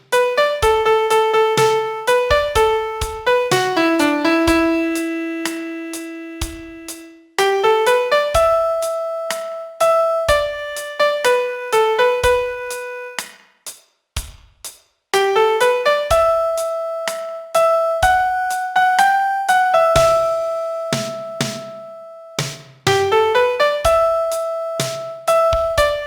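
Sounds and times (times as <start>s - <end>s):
low piano notes: 0.0s - 13.2s, 22.9s - 26.0s
piano melody: 0.0s - 13.2s, 15.2s - 26.0s.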